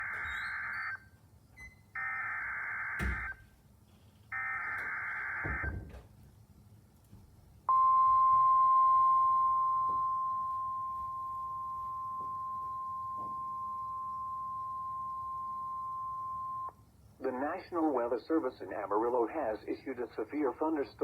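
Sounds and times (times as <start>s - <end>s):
steady warning alarm tone: 0.0s - 3.5s, 4.3s - 5.8s, 7.7s - 16.8s.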